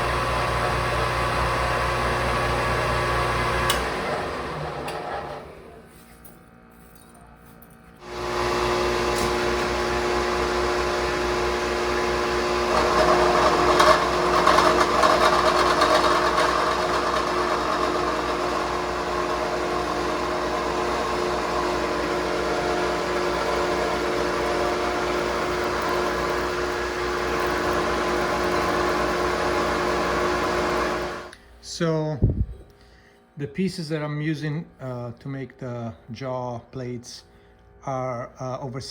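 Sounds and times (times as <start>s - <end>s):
machine tool motor whine: 0.0s - 5.8s, 8.0s - 31.4s.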